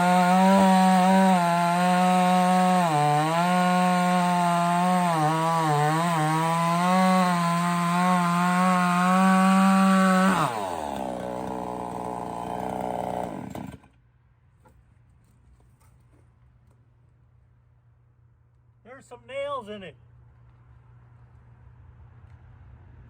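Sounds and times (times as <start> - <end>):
chainsaw cutting log: 0.0 - 14.0.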